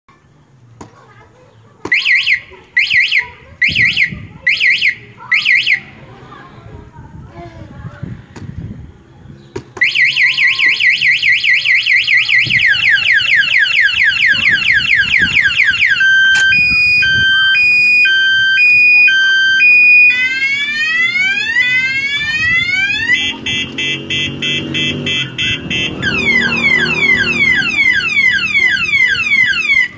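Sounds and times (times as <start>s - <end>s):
motorcycle alarm: 1.9s - 5.9s, 9.8s - 29.9s.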